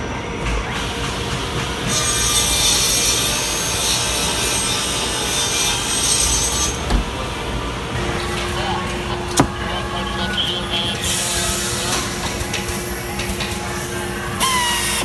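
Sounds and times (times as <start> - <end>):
power tool working wood: 7.9 - 13.6.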